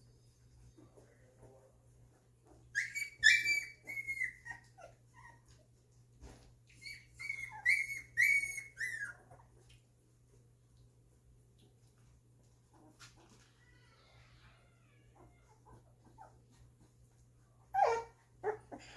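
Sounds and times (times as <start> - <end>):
puppies whimpering and squealing: 2.7 - 5.6, 6.7 - 9.6, 13.5 - 16.6, 17.6 - 18.9.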